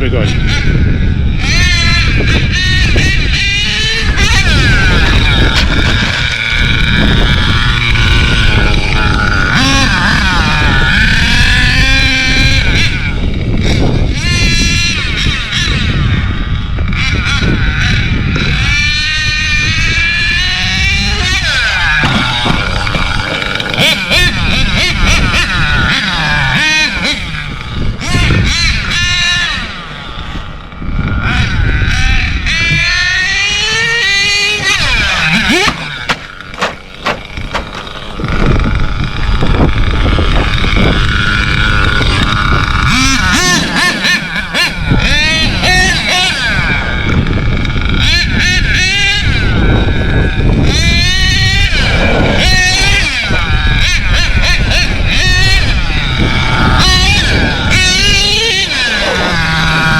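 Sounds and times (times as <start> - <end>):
rc truck engine revving: 0.0 - 59.9
sharp knocks: 35.6 - 37.9.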